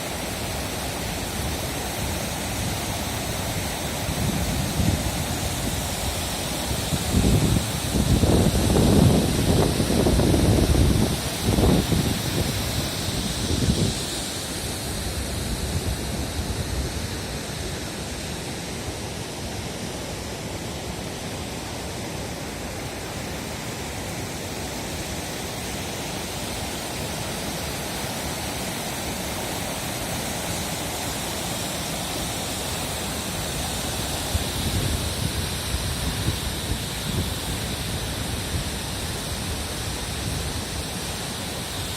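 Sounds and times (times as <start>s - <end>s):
waterfall rushing: 0.0s - 41.9s
wind buffeting microphone: 6.9s - 14.0s.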